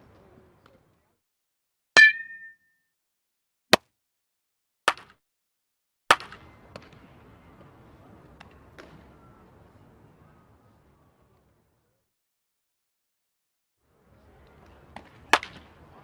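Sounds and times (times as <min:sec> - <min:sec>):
baseball bat hitting ball: 0:02.0 - 0:02.6.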